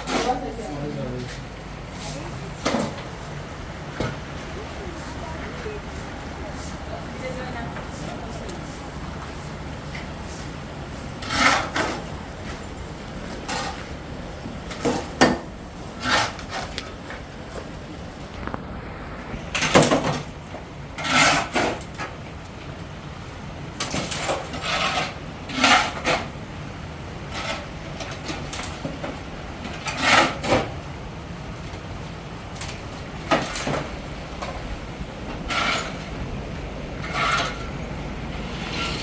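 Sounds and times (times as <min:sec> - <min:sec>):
rasping scrapes: 0:10.2 - 0:12.7, 0:14.7 - 0:17.0, 0:21.0 - 0:21.9, 0:24.0 - 0:26.3, 0:29.8 - 0:30.7, 0:35.4 - 0:36.3, 0:37.0 - 0:37.8, 0:38.4 - 0:39.0.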